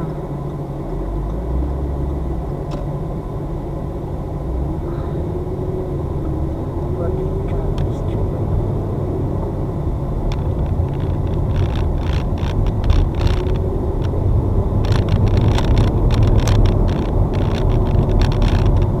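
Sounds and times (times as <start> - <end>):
engine and road rumble: 0.0 - 19.0
short clicks and rattles: 10.3 - 14.2, 14.8 - 19.0.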